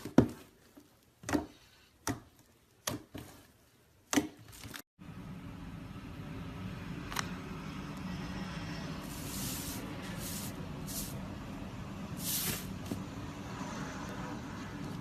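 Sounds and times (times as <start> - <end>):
low steady hum: 5.0 - 15.0.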